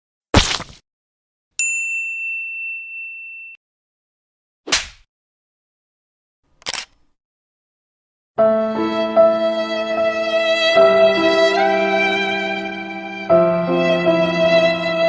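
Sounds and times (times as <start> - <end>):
bright bell ding: 1.6 - 3.6
violin music: 8.4 - 15.0.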